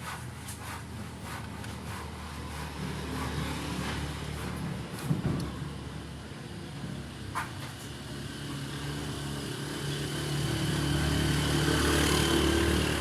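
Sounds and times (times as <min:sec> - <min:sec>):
motor vehicle engine running: 0:11.3 - 0:13.0.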